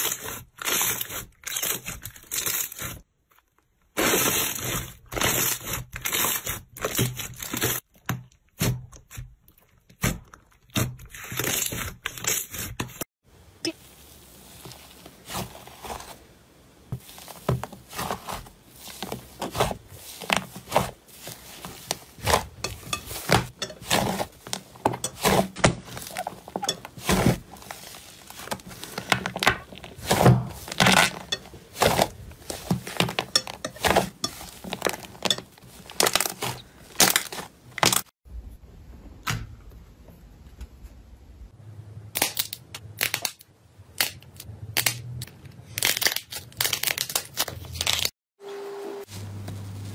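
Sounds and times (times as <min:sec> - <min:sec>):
crunchy material crushed by hand: 0:16.9 - 0:38.1.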